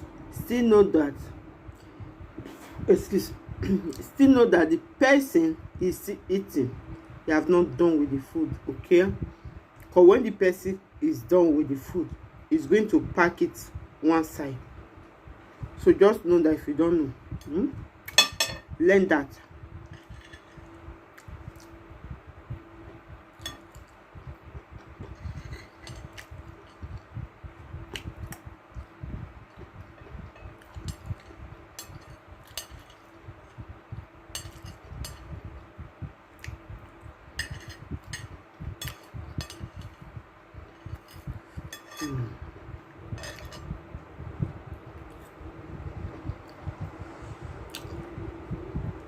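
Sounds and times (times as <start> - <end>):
cutlery clinking on a plate: 18.1 - 18.7, 25.1 - 26.8, 34.4 - 35.3, 37.4 - 40.0, 40.8 - 42.3, 43.2 - 43.7.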